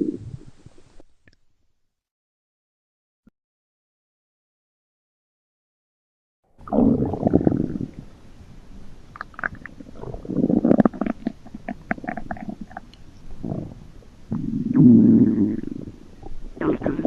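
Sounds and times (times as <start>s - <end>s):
stomach growling: 6.6s - 8.1s, 9.1s - 17.0s.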